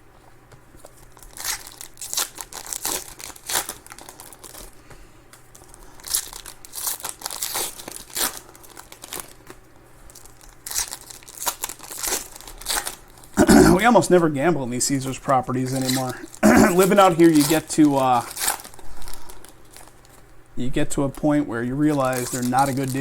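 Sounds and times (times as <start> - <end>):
card pack wrappers crinkling: 0.5 - 23.0.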